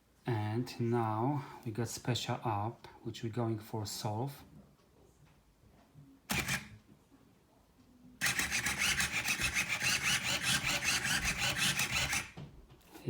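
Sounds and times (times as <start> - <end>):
robot motor turning puzzle cube: 6.3 - 6.7, 8.2 - 12.4.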